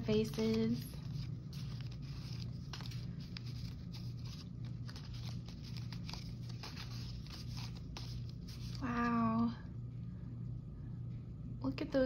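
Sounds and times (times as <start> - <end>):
paper rustling and tapping: 0.0 - 9.3
steady low hum: 0.0 - 12.0.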